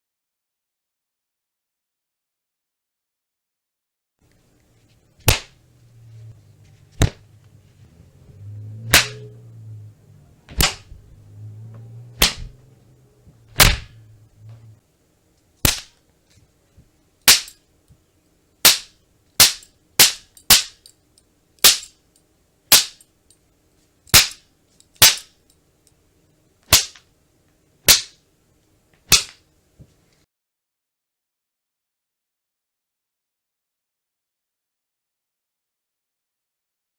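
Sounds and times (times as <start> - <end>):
belt whip cracks: 5.2 - 5.6, 8.8 - 9.3, 10.5 - 11.0, 12.2 - 12.6, 24.1 - 24.4, 29.1 - 29.4.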